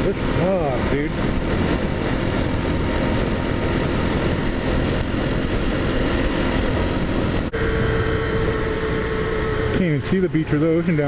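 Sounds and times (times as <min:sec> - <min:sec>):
motorcycle engine running: 0:00.0 - 0:11.0
wind rushing on microphone: 0:00.0 - 0:11.0.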